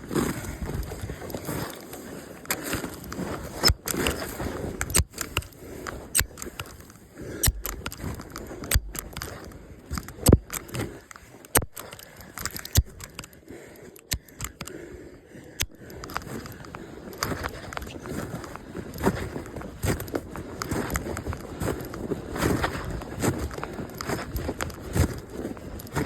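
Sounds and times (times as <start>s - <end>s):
sharp crunches and clicks: 0.0s - 14.8s, 15.4s - 26.0s.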